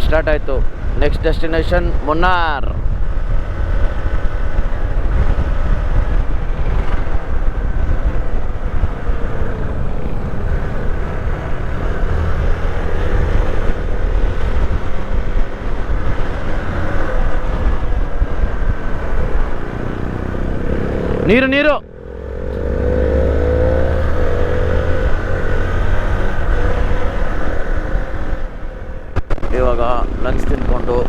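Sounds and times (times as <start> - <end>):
motorcycle engine cruising: 0.0 - 31.0
wind on microphone: 0.0 - 31.0.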